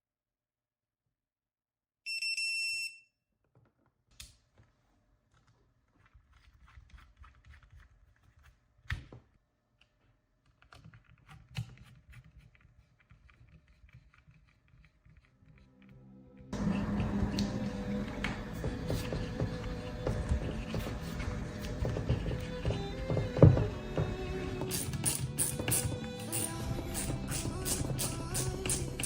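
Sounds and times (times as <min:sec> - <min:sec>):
tools clicking and knocking: 0:18.9 - 0:29.0.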